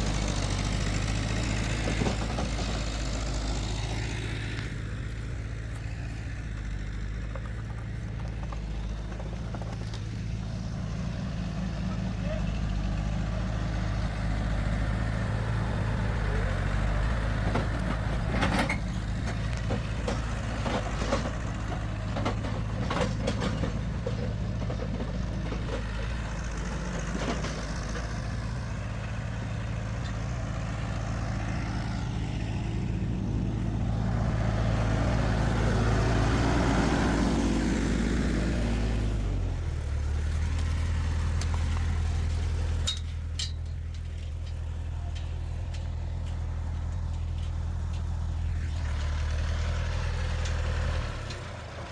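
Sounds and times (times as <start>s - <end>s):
tractor engine running: 0.0s - 51.9s
knocks and rattles: 16.7s - 28.5s, 40.2s - 48.7s.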